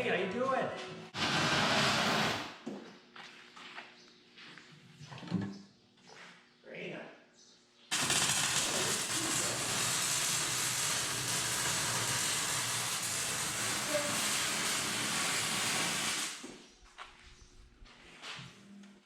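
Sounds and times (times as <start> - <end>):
water spraying hiss: 8.0 - 16.4.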